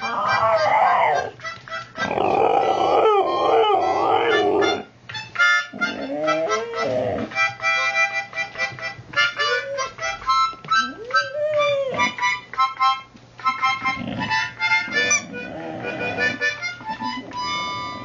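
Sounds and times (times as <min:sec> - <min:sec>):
dog howling: 0:00.0 - 0:01.4, 0:02.0 - 0:04.9, 0:05.8 - 0:07.3, 0:09.4 - 0:10.0, 0:10.8 - 0:12.3, 0:14.0 - 0:16.4
harmonica music: 0:00.0 - 0:18.0.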